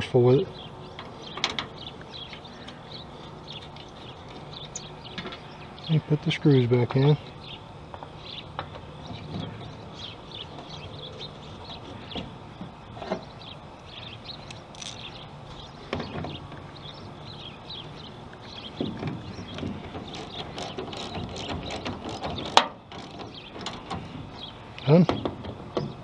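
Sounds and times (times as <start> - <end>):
hand tool clicking on screws: 14.4 - 15.1, 19.6 - 24.0.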